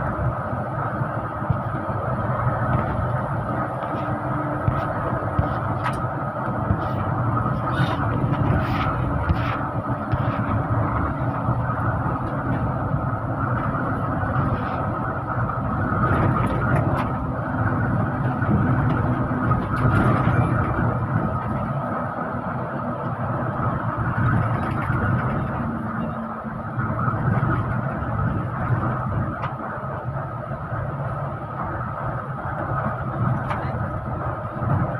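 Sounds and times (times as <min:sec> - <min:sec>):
bus engine and road noise: 0:00.0 - 0:34.9.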